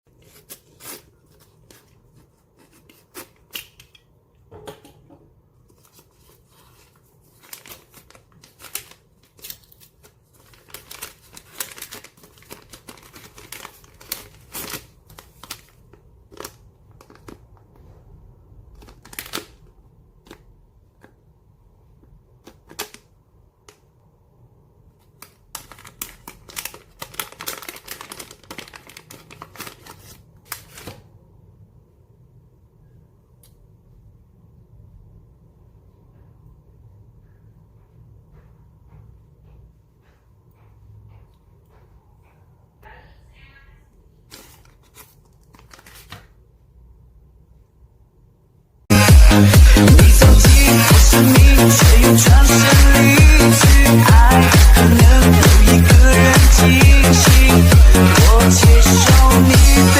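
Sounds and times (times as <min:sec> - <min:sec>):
packaging crinkling and rustling: 0:05.6 - 0:21.2, 0:25.0 - 0:31.1, 0:44.3 - 0:46.4.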